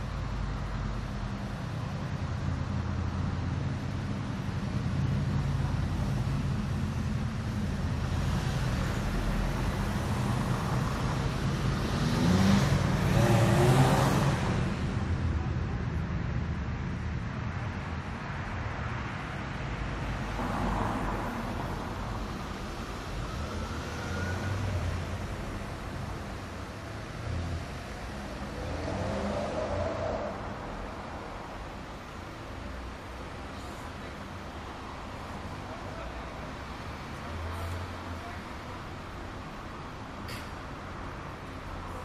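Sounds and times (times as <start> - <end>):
traffic rumble: 0.0 - 42.0
vehicle accelerating past: 11.8 - 14.8, 27.2 - 30.6.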